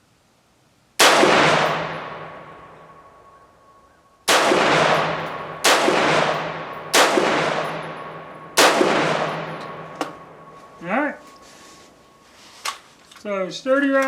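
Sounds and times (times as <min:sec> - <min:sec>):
rifle shots with echo: 0:01.0 - 0:03.4, 0:04.3 - 0:10.6.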